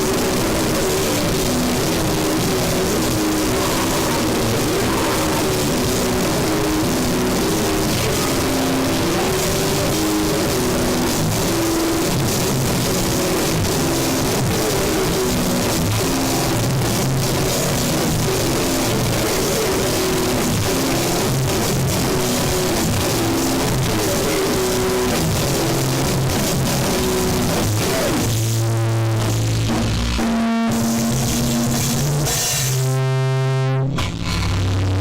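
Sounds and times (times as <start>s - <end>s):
distorted guitar riffing: 0.0s - 35.0s
loud wall of noise: 0.0s - 35.0s
held low note: 29.0s - 35.0s.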